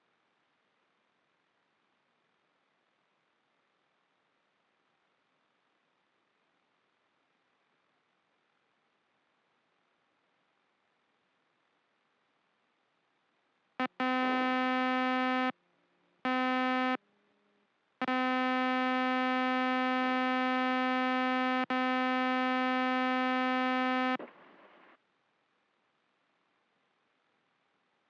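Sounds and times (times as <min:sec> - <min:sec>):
electronic stall warning tone: 0:13.8 - 0:15.5, 0:16.3 - 0:17.0, 0:18.0 - 0:24.2.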